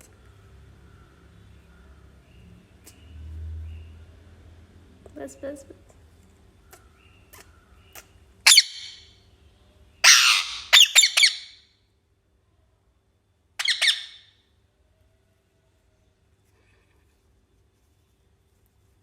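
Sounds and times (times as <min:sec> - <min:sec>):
parrot squawking: 0:08.4 - 0:09.1, 0:10.0 - 0:11.6, 0:13.6 - 0:14.3.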